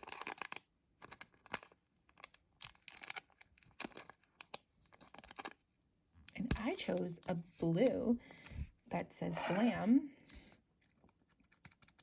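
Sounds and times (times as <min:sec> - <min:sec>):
plastic packet crackling and rustling: 0:00.0 - 0:05.7.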